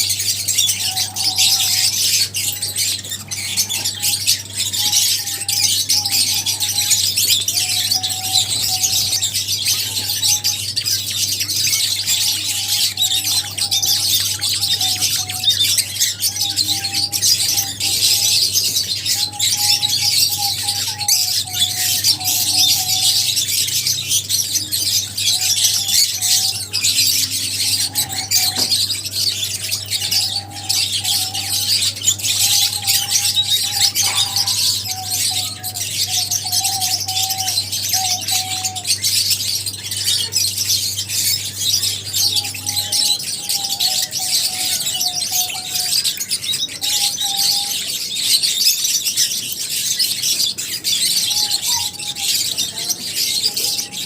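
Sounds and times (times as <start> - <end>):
birds chirping: 0.0 - 54.0
lower wavering bird call: 24.5 - 47.9.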